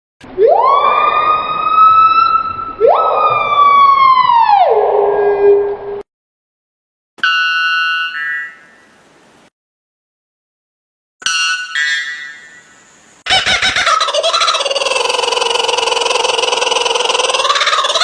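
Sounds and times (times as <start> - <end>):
siren wailing: 0.2 - 6.0.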